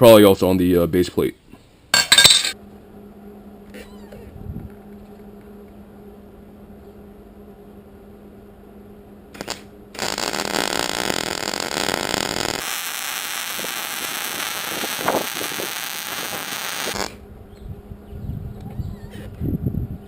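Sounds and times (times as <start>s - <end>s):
low steady hum: 0.0s - 20.0s
welding arc crackling and buzzing: 9.3s - 17.2s.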